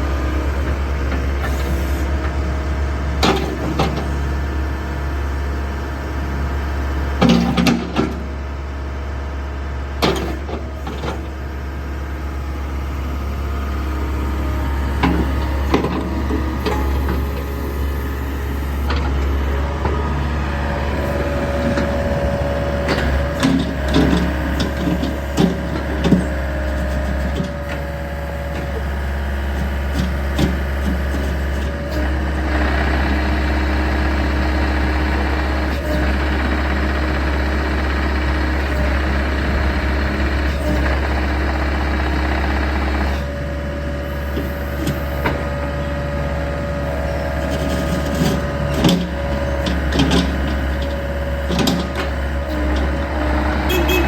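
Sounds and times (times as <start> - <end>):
diesel excavator engine running: 0.0 - 54.0
steady higher engine tone: 52.9 - 54.0.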